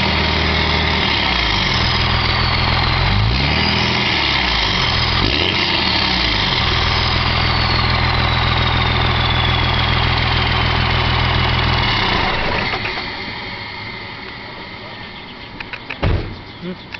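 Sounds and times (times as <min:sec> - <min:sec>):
diesel engine running: 0:00.0 - 0:16.9
turbo whistle spooling down: 0:00.6 - 0:12.5.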